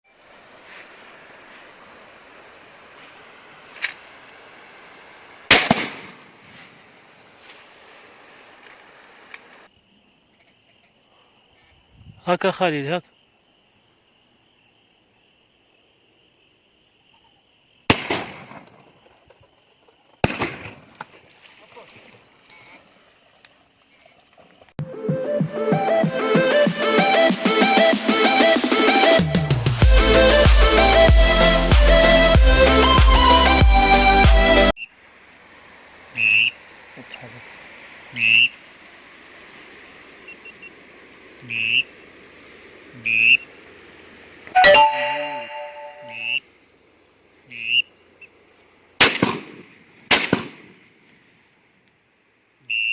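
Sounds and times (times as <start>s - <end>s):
shotgun shot: 5.5s - 6.2s, 17.9s - 18.7s, 20.2s - 20.9s, 49.0s - 50.8s
insects chirring: 7.1s - 24.6s, 34.8s - 44.5s
short whistled calls: 36.2s - 36.6s, 40.3s - 40.8s, 43.0s - 43.5s, 52.6s - 52.9s.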